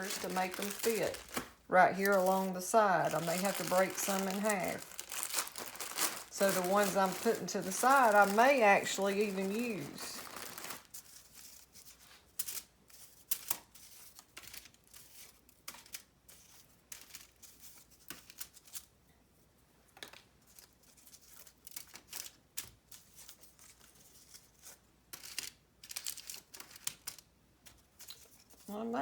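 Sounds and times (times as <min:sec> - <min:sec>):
foil crinkling: 0:00.0 - 0:12.7, 0:20.0 - 0:27.3
crackers clicking on a cookie sheet: 0:13.2 - 0:18.8, 0:25.1 - 0:28.3.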